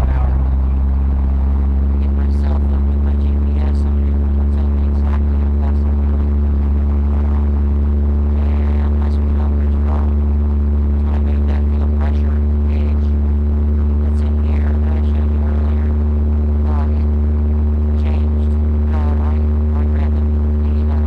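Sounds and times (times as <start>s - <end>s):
car engine droning: 0.0s - 7.3s.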